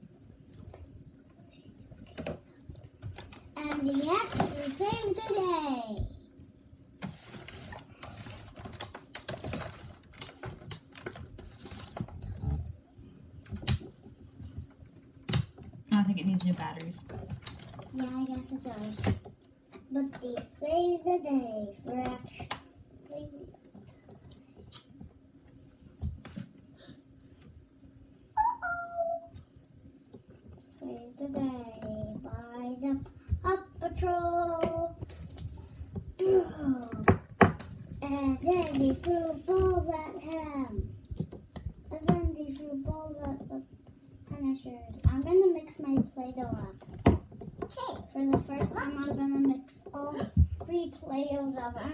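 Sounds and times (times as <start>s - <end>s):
high-pitched whimper: 28.4s - 29.3s.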